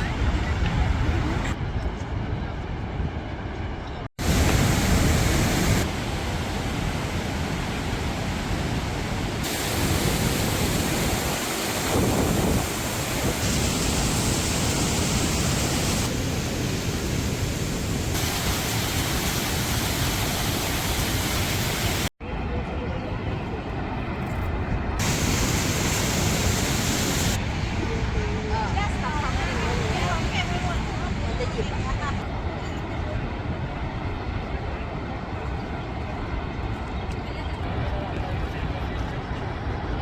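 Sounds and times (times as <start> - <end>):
waterfall rushing: 4.2 - 22.1, 25.0 - 27.7.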